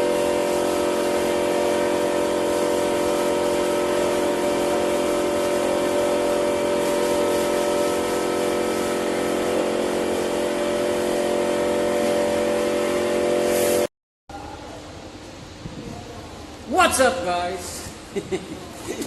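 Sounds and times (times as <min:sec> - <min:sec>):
machine motor drone: 0:00.0 - 0:13.9.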